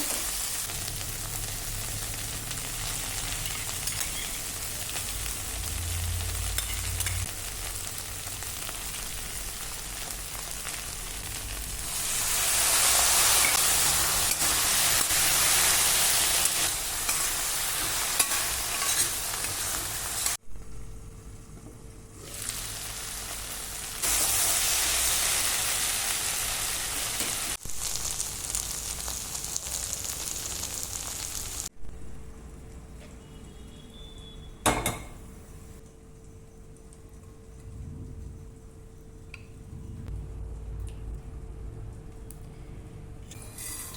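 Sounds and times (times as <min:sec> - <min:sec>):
food sizzling in a hot pan: 0:00.0 - 0:20.4, 0:22.2 - 0:31.7.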